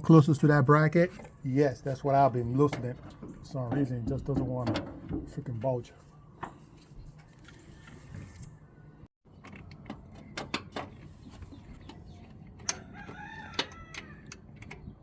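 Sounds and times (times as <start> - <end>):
rooster crowing: 12.7 - 14.3.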